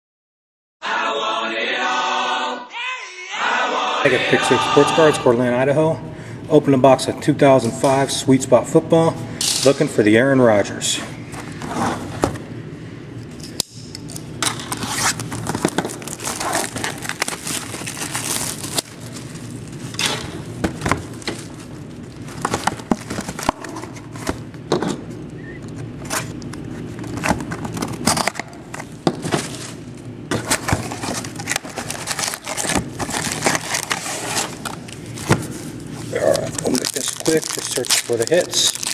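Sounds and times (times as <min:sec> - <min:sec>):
plastic and foil wrapping crinkling: 0:14.5 - 0:20.0, 0:27.0 - 0:38.9.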